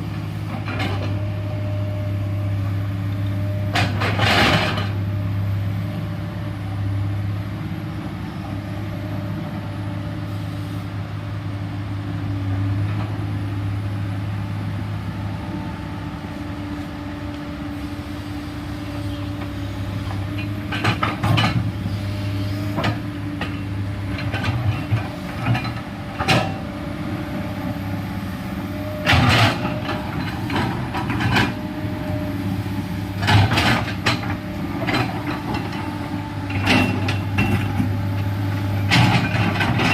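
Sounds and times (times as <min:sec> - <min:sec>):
excavator diesel engine running: 0:00.0 - 0:39.9
excavator bucket clanking: 0:28.9 - 0:31.6, 0:33.1 - 0:38.0, 0:38.8 - 0:39.9.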